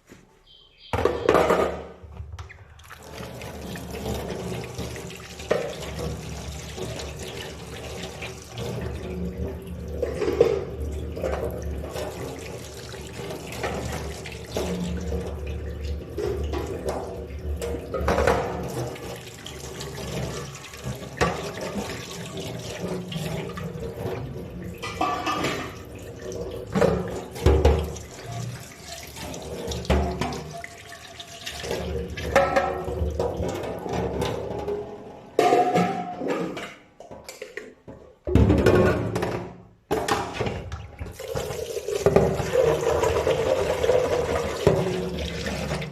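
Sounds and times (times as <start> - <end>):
dishes knocking and clattering: 0.9 - 2.3, 9.8 - 12.4, 16.2 - 19.1, 20.9 - 22.1, 22.9 - 25.9, 26.7 - 28.0, 29.7 - 30.5, 31.7 - 43.2
tap water running into sink: 2.4 - 34.8, 38.3 - 45.9.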